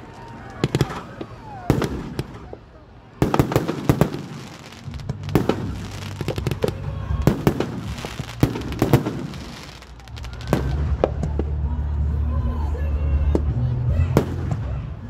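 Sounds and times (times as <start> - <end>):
firecrackers banging and popping: 0.0 - 11.7.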